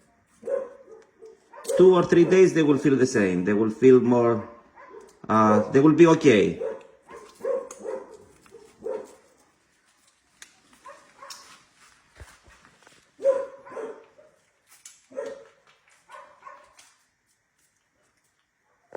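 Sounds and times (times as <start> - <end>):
dogs barking: 0.0 - 2.9, 4.2 - 9.6, 10.8 - 11.6, 13.1 - 17.0.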